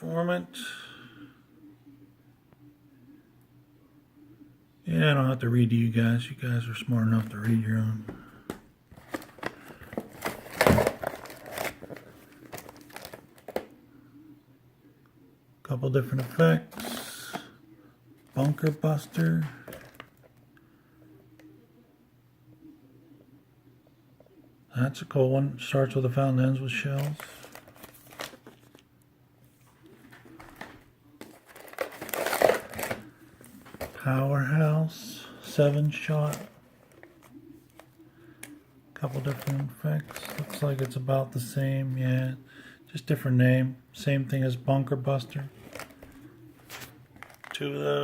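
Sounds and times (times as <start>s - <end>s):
cardboard packaging rustling: 7.1s - 13.7s, 18.2s - 20.3s, 27.0s - 28.8s, 29.6s - 34.1s, 35.4s - 38.0s, 39.1s - 41.0s, 45.4s - 47.6s.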